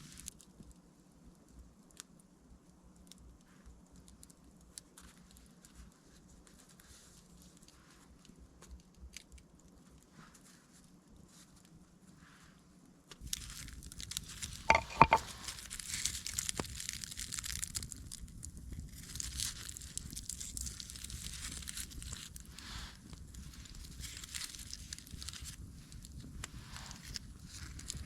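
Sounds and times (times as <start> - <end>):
close rustling and crinkling: 3.4 - 28.0.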